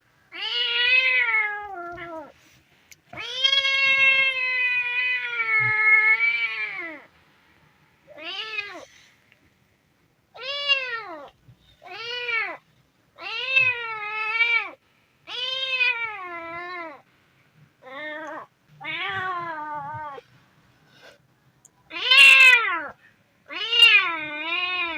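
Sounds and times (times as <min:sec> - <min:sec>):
kitten meowing: 0:21.9 - 0:22.9, 0:23.5 - 0:24.9.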